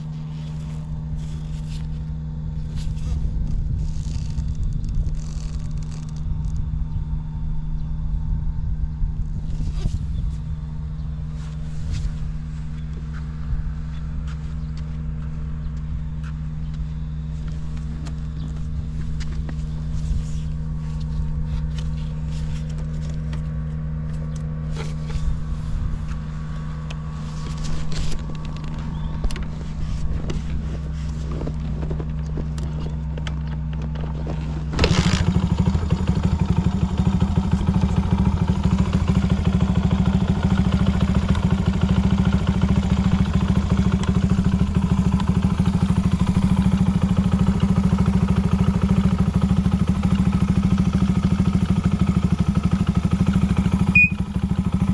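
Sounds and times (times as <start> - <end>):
motorcycle engine idling: 0.0 - 54.9
light clicks and scrapes: 17.4 - 34.7.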